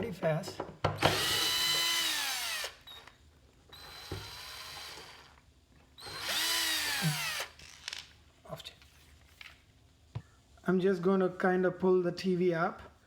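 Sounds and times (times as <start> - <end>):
power drill motor whining: 1.0 - 3.1, 3.7 - 5.3, 6.0 - 8.0.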